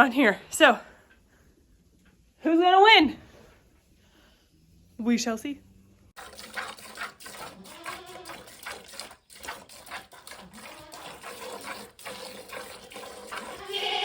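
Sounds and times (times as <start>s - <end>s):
milk squirting into a pail: 6.2s - 14.0s.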